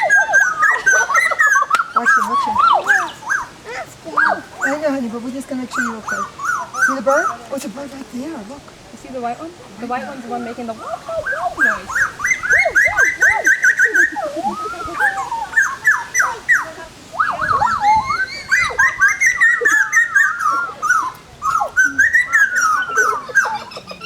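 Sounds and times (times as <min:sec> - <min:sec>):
parrot squawking and whistling: 0:00.0 - 0:03.5, 0:10.8 - 0:24.0.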